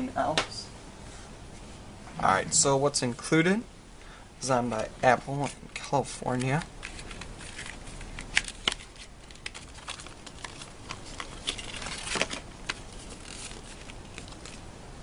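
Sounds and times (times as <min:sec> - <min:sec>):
paper rustle: 0:06.2 - 0:14.7.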